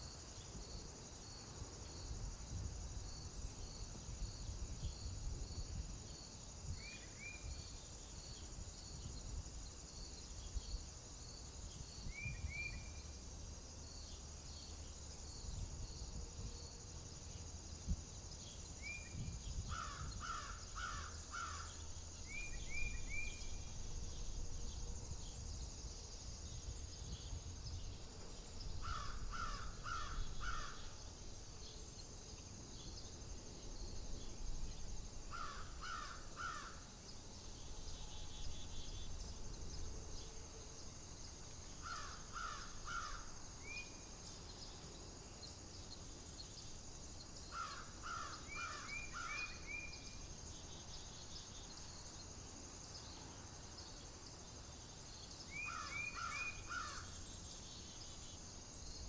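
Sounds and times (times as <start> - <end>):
high insect buzz: 0.0 - 59.0
low wind rumble: 21.8 - 31.6
crow cawing: 28.8 - 30.8, 35.3 - 36.8.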